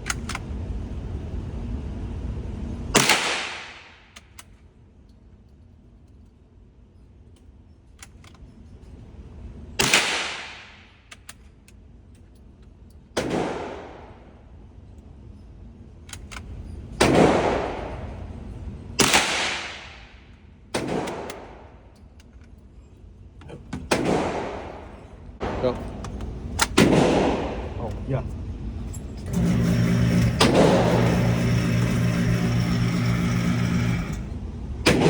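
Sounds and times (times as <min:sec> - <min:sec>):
rifle shots with echo: 0:03.0 - 0:04.0, 0:09.8 - 0:10.8, 0:13.2 - 0:14.2, 0:17.0 - 0:18.0, 0:19.0 - 0:20.1, 0:20.7 - 0:21.7, 0:23.9 - 0:25.9, 0:26.6 - 0:27.8.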